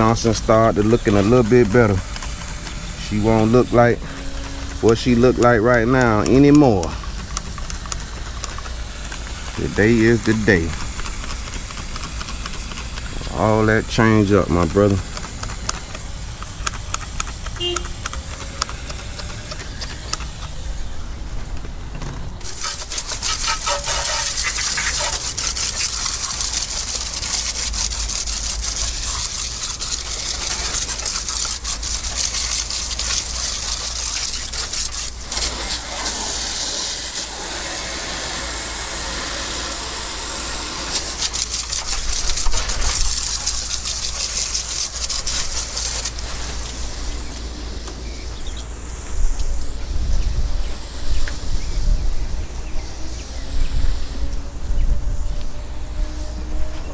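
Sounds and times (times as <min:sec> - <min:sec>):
liquid spraying from nozzle: 0:00.0 - 0:20.8, 0:22.4 - 0:48.7
scattered clicks: 0:04.2 - 0:20.6.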